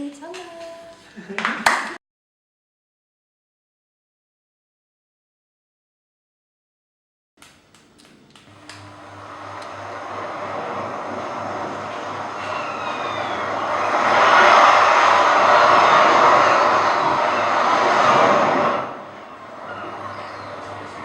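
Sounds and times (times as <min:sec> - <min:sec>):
surf wave rushing: 0:08.8 - 0:21.0.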